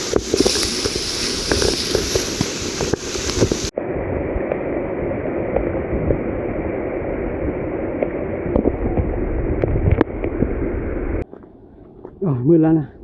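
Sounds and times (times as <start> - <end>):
faint clicks: 0.0 - 3.7
waterfall rushing: 0.0 - 3.7.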